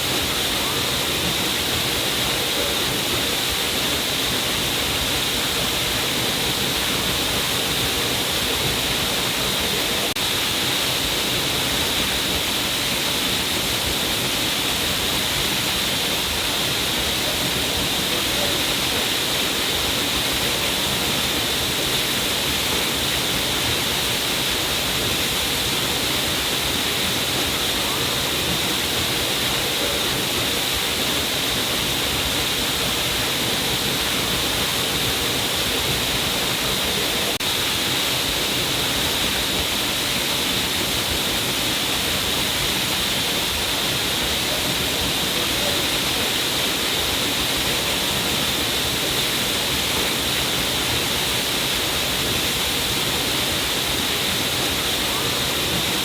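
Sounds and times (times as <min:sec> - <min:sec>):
waterfall rushing: 0:00.0 - 0:56.0.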